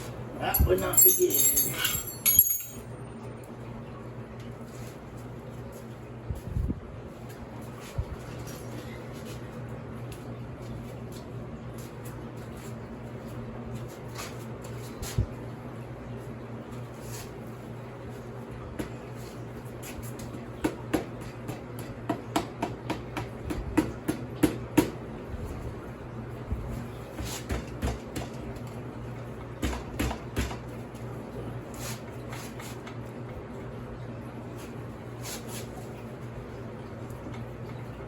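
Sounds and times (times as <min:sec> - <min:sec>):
metal tools and parts clinking: 0:00.4 - 0:02.9.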